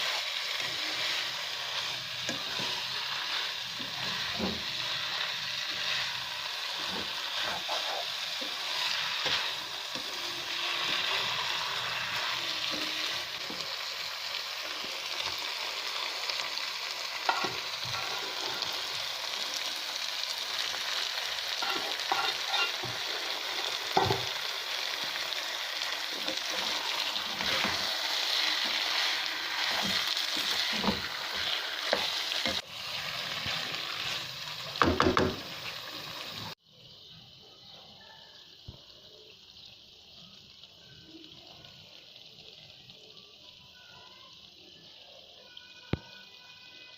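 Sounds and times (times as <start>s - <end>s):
spoon scraping a pan: 0.0s - 13.5s, 17.2s - 18.9s, 21.5s - 24.4s, 26.0s - 34.3s
chicken sizzling in oil: 0.0s - 46.9s.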